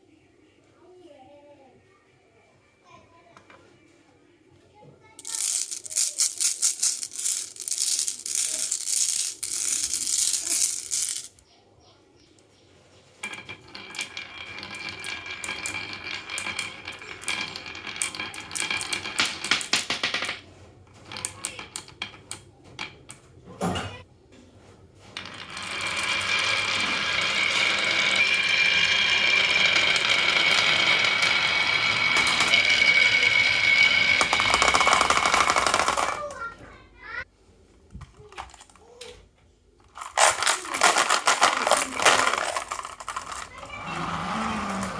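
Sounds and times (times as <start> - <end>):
marbles rolling and clattering: 5.2 - 11.4, 13.2 - 23.4, 25.0 - 36.5, 38.0 - 39.0, 39.8 - 44.9.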